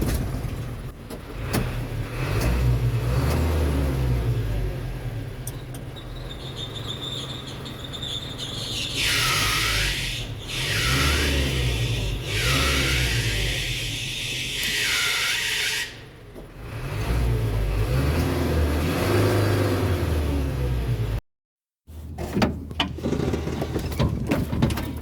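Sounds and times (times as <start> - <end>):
truck engine idling: 4.4 - 16.9
drive belt squealing: 5.5 - 16.4.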